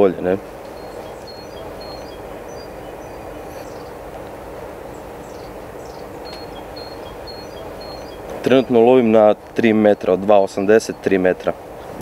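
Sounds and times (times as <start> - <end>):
faint continuous hum: 0.0 - 12.0
steady outdoor rumble: 0.0 - 12.0
faint high chirps: 0.7 - 4.0, 4.9 - 8.8.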